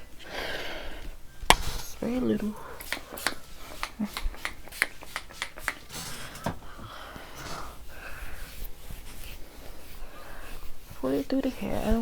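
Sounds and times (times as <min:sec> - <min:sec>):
rustling and rubbing: 0:00.9 - 0:12.0
spray bottle spritzing: 0:02.8 - 0:06.6.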